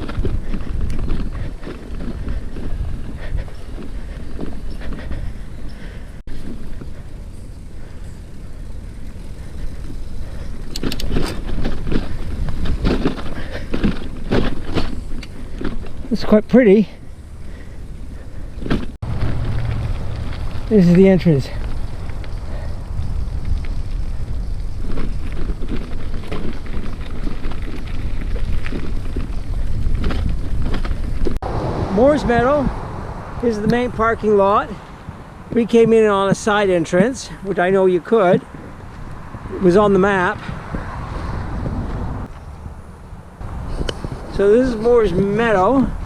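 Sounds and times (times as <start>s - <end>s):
wind on microphone: 0.0s - 6.2s, 21.7s - 36.6s, 38.5s - 46.0s
bicycle rattling over bumps: 0.0s - 31.4s, 33.4s - 46.0s
bicycle rolling over dirt trail: 0.0s - 32.6s, 33.4s - 46.0s.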